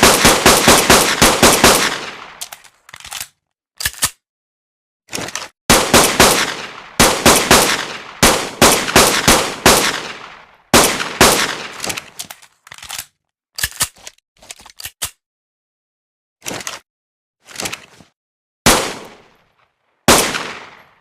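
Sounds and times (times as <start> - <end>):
pistol gunshots with echo: 0.0 - 2.4, 5.7 - 11.9, 18.7 - 19.3, 20.1 - 21.0.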